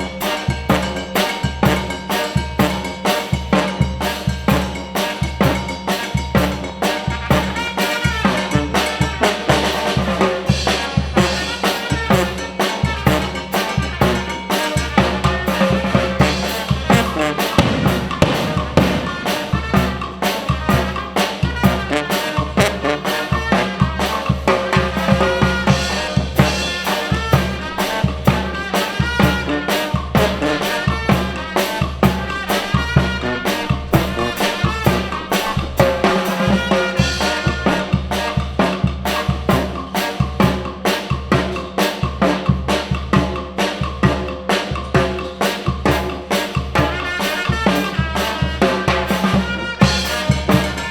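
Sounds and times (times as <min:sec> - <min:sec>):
brass band playing: 0:00.0 - 0:50.9
bass drum and snare beat: 0:15.6 - 0:39.8.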